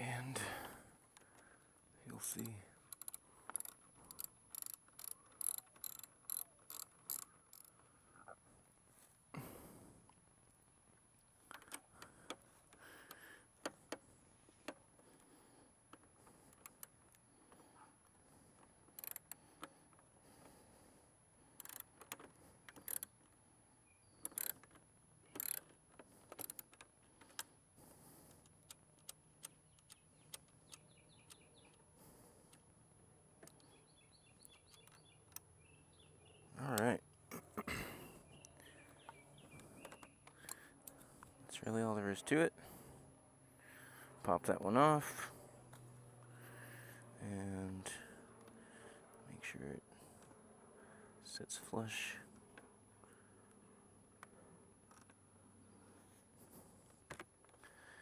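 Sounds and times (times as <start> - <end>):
ratchet wrench clicks: 2.4 - 7.7, 18.9 - 19.4, 21.6 - 23.2, 24.2 - 27.4.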